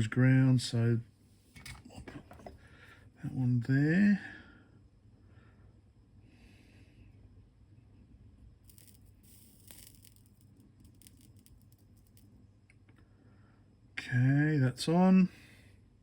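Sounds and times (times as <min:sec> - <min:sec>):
low room hum: 0:00.0 - 0:16.0
solder sizzling crackle: 0:08.6 - 0:12.4.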